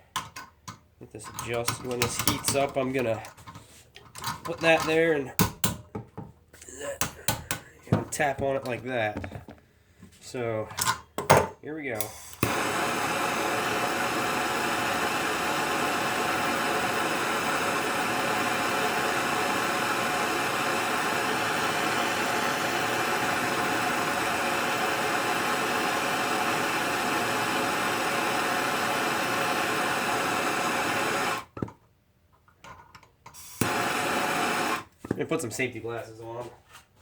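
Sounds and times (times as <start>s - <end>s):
heat gun blowing hiss: 12.0s - 31.5s, 33.4s - 34.9s.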